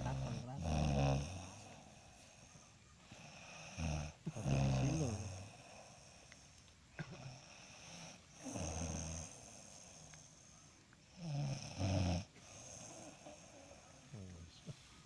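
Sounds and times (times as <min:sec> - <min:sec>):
person snoring: 0:00.0 - 0:02.2, 0:03.1 - 0:06.3, 0:07.2 - 0:10.1.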